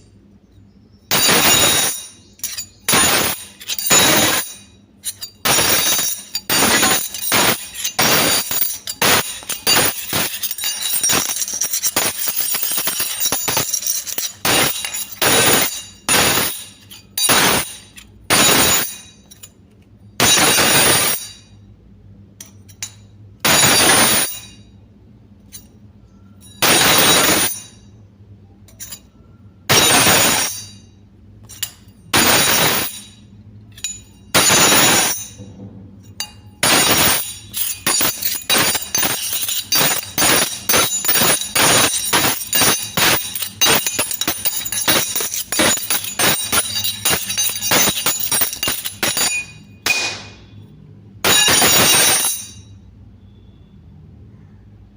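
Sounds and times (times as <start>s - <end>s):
longer metallic sounds: 0.0s - 21.7s, 25.4s - 52.9s
metal spoons clinking: 1.1s - 21.6s, 28.6s - 52.8s.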